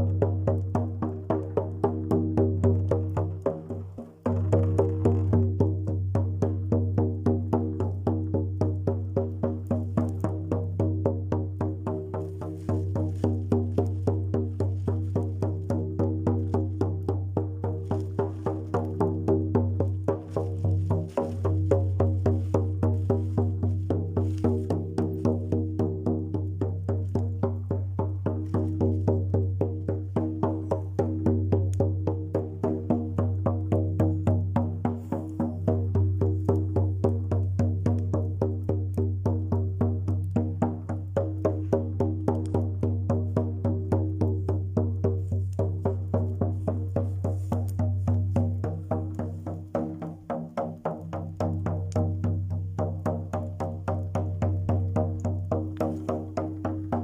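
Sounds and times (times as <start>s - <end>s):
fast percussion strikes: 0.0s - 57.0s.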